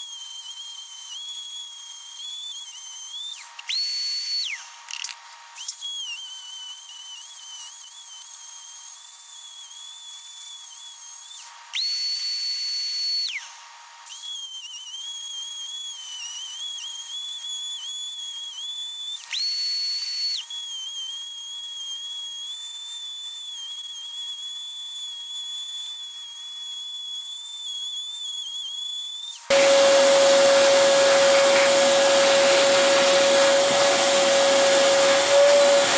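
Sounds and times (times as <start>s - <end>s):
rotary tool grinding whine: 29.5s - 35.9s.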